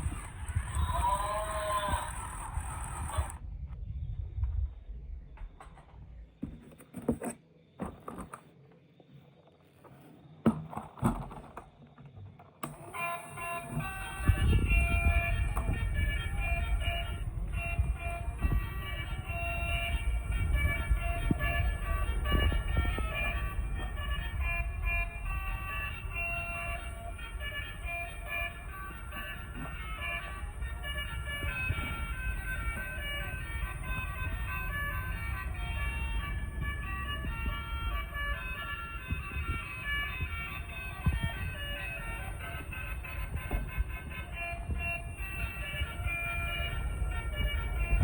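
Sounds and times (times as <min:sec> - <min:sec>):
low rumble: 0:00.0 - 0:06.4
melody of short notes: 0:12.7 - 0:48.0.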